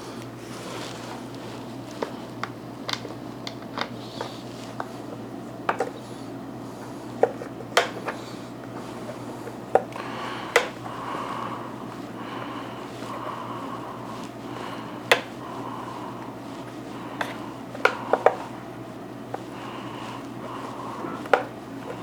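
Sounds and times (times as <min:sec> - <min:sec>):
faint steady low hum: 0:00.0 - 0:22.0.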